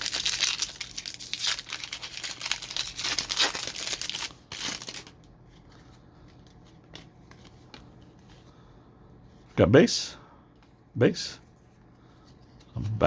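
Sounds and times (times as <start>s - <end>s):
wrapper crinkling and tearing: 0.0s - 5.3s.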